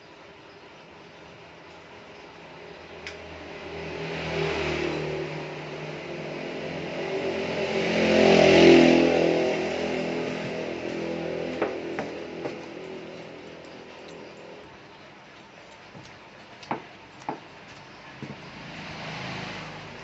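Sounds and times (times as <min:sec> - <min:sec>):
vehicle engine passing by: 0:02.4 - 0:14.7, 0:17.9 - 0:20.0.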